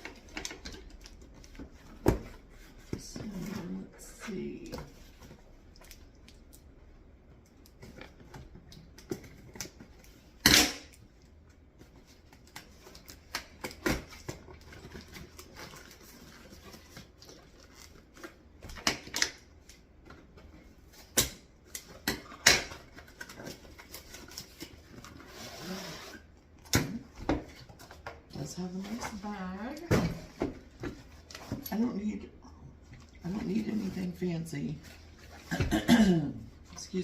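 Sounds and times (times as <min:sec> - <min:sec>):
packaging rustling: 0:11.8 - 0:18.6.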